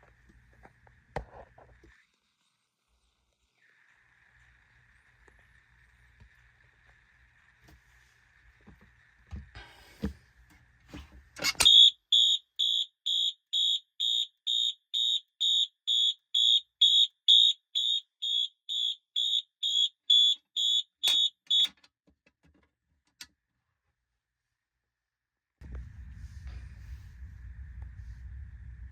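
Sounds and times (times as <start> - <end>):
alarm clicks: 11.6 - 21.8
fire alarm pulsing beep: 11.6 - 21.8.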